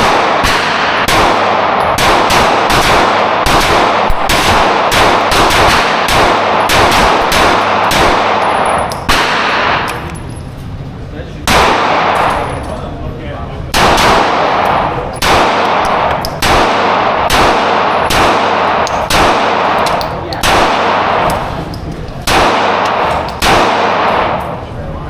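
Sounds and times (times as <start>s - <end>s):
gunshots with ringing tail: 0.0s - 10.1s, 11.5s - 12.6s, 13.7s - 24.7s.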